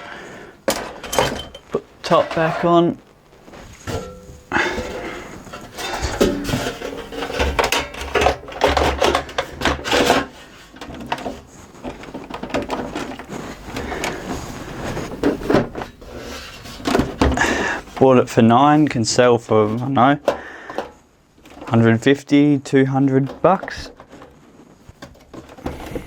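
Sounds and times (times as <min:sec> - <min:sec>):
metal cover clattering: 0:00.7 - 0:02.7, 0:03.9 - 0:13.2.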